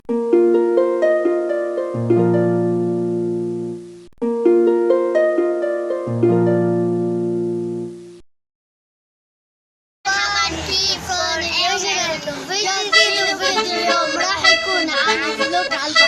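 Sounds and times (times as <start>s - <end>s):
harp-like plucked string music: 0.1s - 8.2s.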